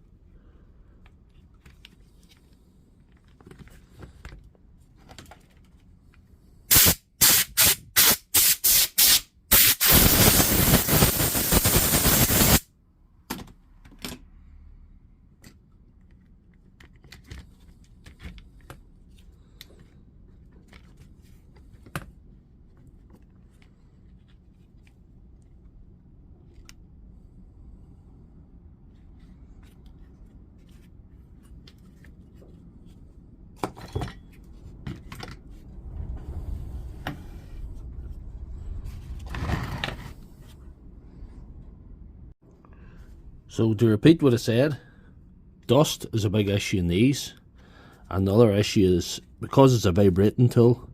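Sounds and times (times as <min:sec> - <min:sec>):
compressed air blasts: 0:06.7 - 0:12.7.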